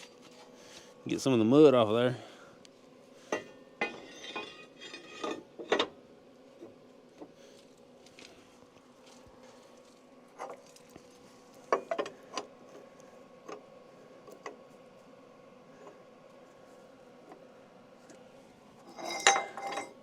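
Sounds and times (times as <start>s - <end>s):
faint steady hum: 0.0s - 20.0s
metal parts and tools clinking: 18.9s - 20.0s.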